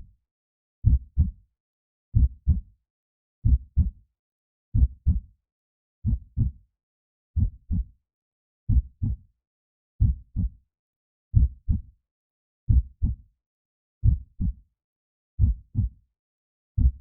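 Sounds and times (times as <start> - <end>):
slow heartbeat thumps: 14.0 - 14.6, 15.4 - 15.9, 16.8 - 17.0.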